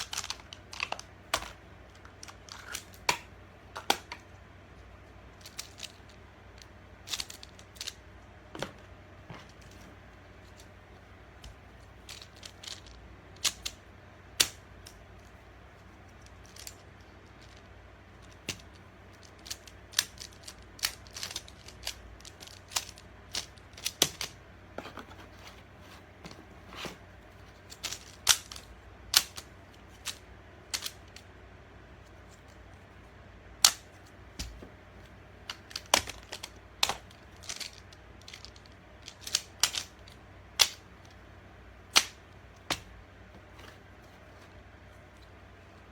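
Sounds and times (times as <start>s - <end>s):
plastic tiles clicking together: 35.5s - 40.8s.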